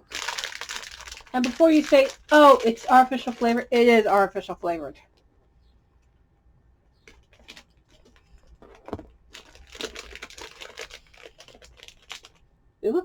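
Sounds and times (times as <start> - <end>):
plastic candy wrapper crinkling: 0.0 - 4.6, 7.1 - 12.5.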